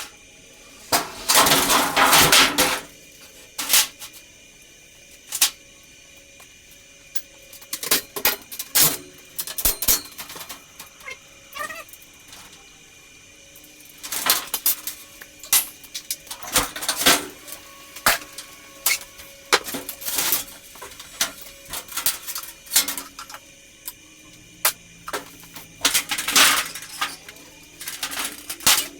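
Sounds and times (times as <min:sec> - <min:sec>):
metal clanks and clinks: 0:08.8 - 0:10.6, 0:25.1 - 0:28.9.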